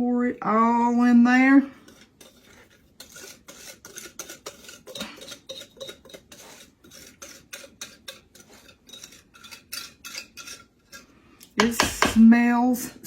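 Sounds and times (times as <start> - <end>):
utensil scraping a mixing bowl: 1.3 - 12.4.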